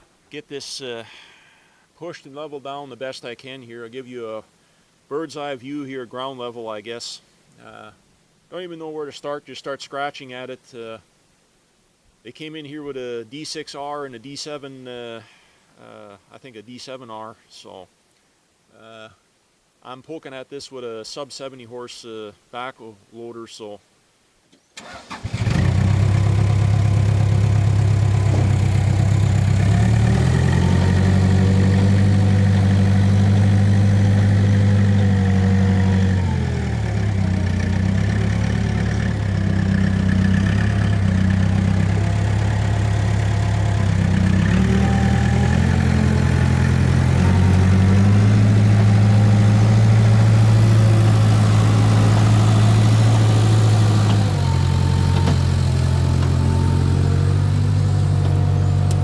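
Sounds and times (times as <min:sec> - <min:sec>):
diesel engine revving: 0:24.8 - 0:59.0.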